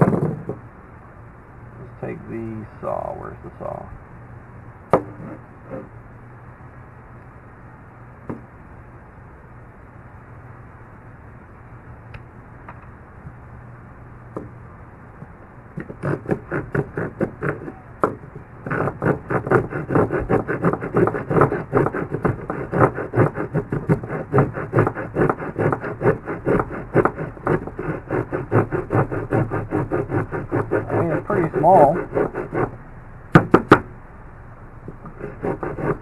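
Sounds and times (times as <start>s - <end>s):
saw blade sawing wood: 5.2s - 5.9s, 15.8s - 32.8s, 35.0s - 36.0s.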